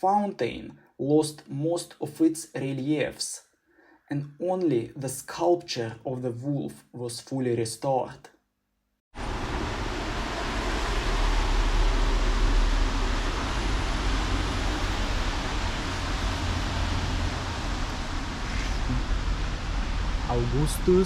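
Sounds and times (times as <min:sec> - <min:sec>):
traffic hiss and rumble: 0:09.2 - 0:21.0.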